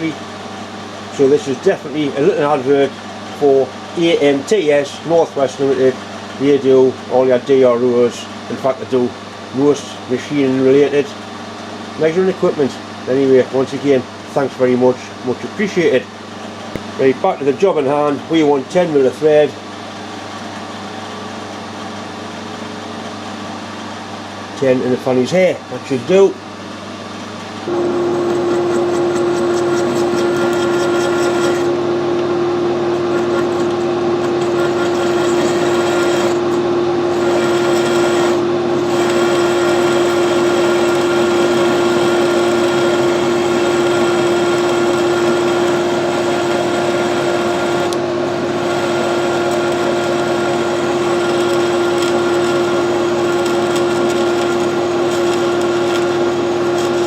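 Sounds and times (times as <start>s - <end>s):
metal lathe humming: 0.0s - 12.4s, 27.2s - 57.0s.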